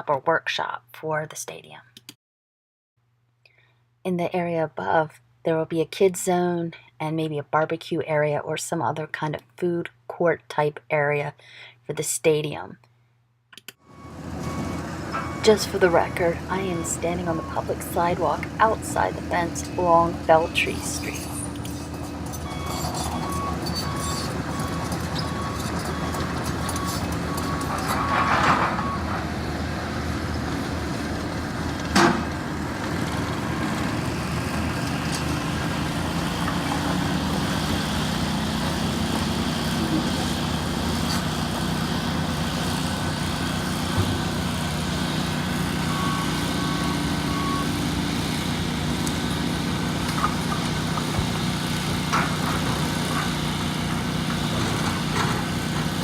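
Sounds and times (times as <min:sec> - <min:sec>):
reversing alarm beeps: 0:13.9 - 0:17.7, 0:22.4 - 0:28.2, 0:28.8 - 0:29.1, 0:45.8 - 0:47.8
diesel engines humming: 0:13.9 - 0:56.0.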